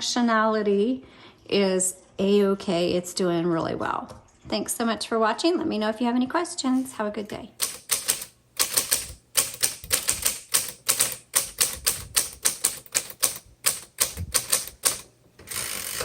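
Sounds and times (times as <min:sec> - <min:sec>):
typewriter keys striking: 0:07.6 - 0:16.0
typewriter rasping sweep: 0:07.6 - 0:16.0.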